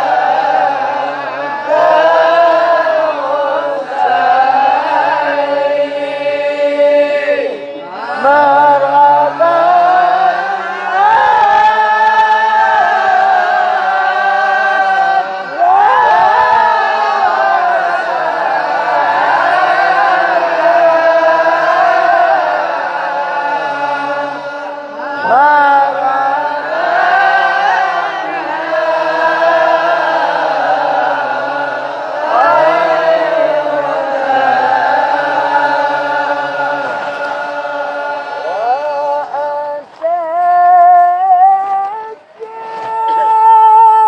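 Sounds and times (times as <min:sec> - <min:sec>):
man chanting: 0:01.8 - 0:10.2, 0:25.0 - 0:26.7, 0:38.4 - 0:44.0.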